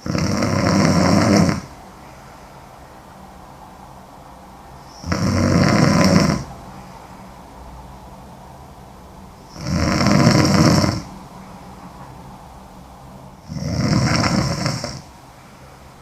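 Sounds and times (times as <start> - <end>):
woman snoring heavily: 0.0 - 1.8, 4.8 - 6.9, 9.5 - 11.1, 13.4 - 15.1
quiet breathing: 0.0 - 16.0.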